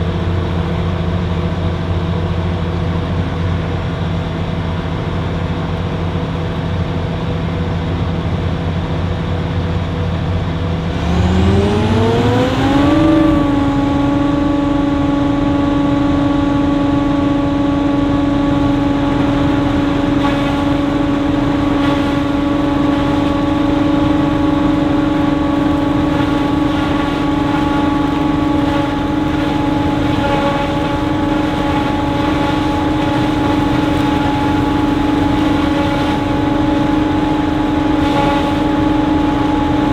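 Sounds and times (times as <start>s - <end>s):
constant engine whine: 0.0s - 39.9s
diesel engine revving: 10.7s - 39.9s.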